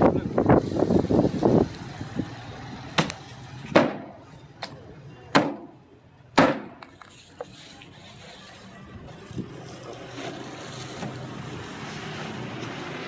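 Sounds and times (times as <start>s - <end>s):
cleaver chopping on block: 6.4s - 6.9s.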